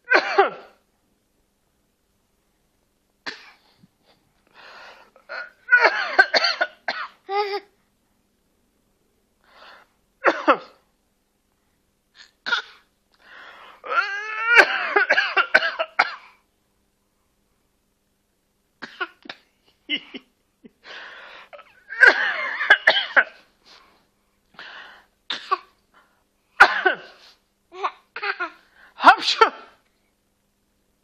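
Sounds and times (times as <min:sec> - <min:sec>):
person fake coughing: 0:00.1 - 0:00.8, 0:05.2 - 0:07.7, 0:10.2 - 0:10.8, 0:14.5 - 0:16.3, 0:21.6 - 0:23.4, 0:25.3 - 0:25.7, 0:26.6 - 0:27.2, 0:27.8 - 0:29.8.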